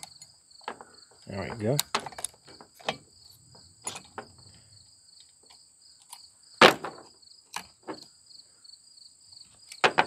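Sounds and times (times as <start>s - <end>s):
chainsaw parts clicking and knocking: 0.0s - 4.6s, 5.2s - 8.1s, 9.6s - 10.0s
crickets chirring: 0.0s - 10.0s.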